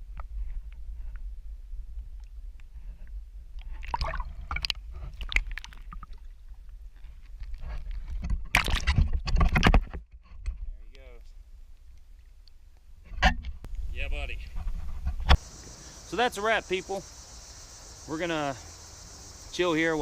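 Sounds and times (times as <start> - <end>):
water splashing around a kayak: 3.8 - 6.7.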